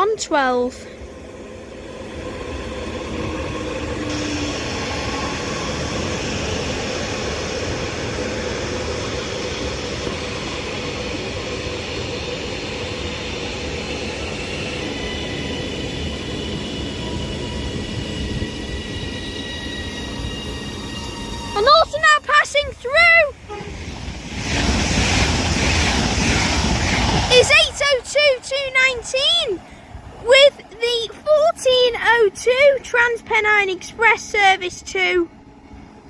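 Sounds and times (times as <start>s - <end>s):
train wheels rumbling: 0.0s - 36.0s
train whining tones: 0.0s - 36.0s
higher steady tones: 13.7s - 36.0s.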